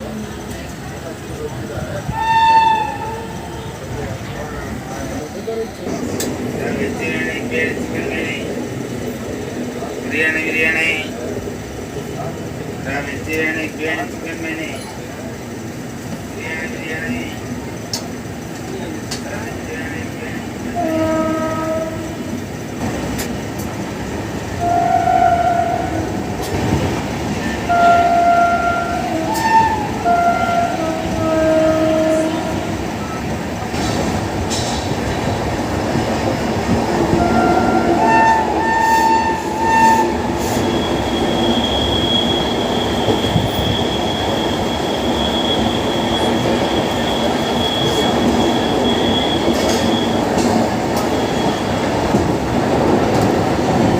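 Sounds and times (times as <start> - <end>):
train rumbling on rails: 0.0 - 53.9
train horn honking: 2.1 - 3.7, 20.7 - 22.3, 24.6 - 26.2, 27.6 - 33.2, 37.2 - 43.8.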